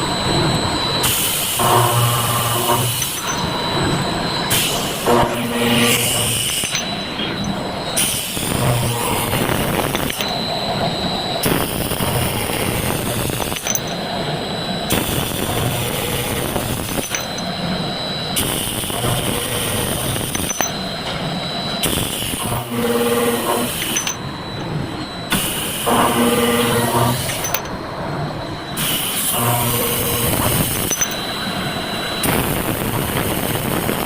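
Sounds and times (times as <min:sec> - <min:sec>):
circular saw machine running: 0:00.0 - 0:34.0
saw cutting hiss and whine: 0:00.0 - 0:34.0.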